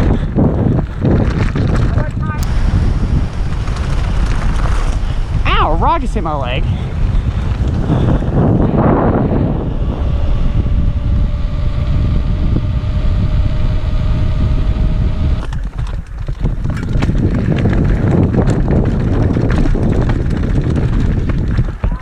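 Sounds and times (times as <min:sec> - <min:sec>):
bike rattling: 0:00.0 - 0:22.0
wind buffeting microphone: 0:00.0 - 0:22.0
stones and bike parts clattering: 0:00.5 - 0:02.4, 0:15.4 - 0:22.0.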